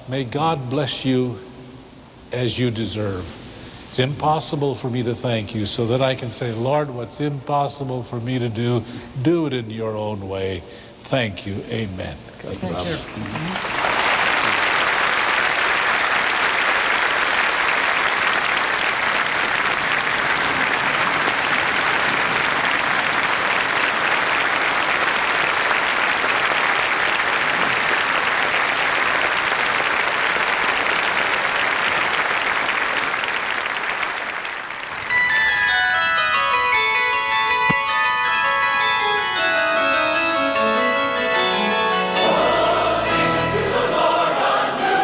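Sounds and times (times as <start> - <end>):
congregation applauding: 12.6 - 36.2.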